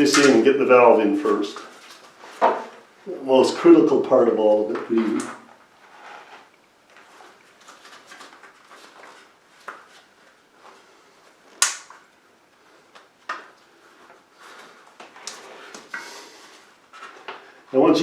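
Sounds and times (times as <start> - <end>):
rubber tube rubbing: 5.7 - 6.6.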